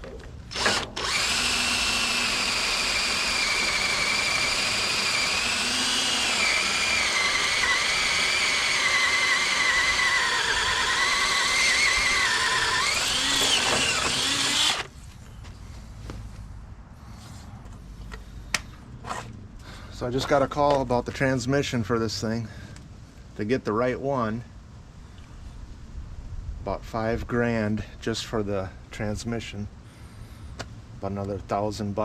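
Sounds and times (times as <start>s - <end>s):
power drill motor whine: 0.5s - 14.9s.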